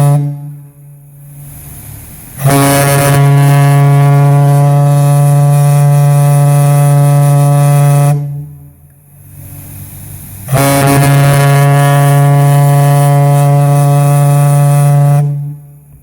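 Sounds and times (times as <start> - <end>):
steam horn blast: 0.0 - 16.0.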